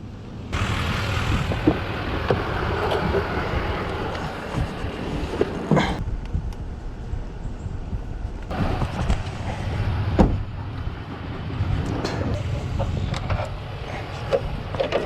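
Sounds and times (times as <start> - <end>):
outboard motor drone: 0.5 - 5.8, 8.5 - 15.0
wind and water rushing: 0.6 - 6.0.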